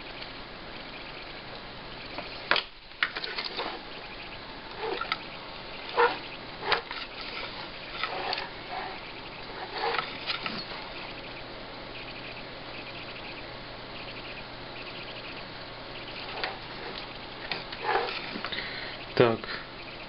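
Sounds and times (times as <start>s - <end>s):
rustling: 4.7s - 11.1s, 16.2s - 18.6s.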